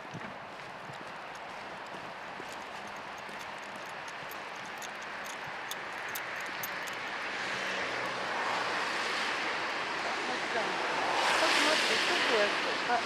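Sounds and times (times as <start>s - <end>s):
steady outdoor noise: 0.0s - 13.0s.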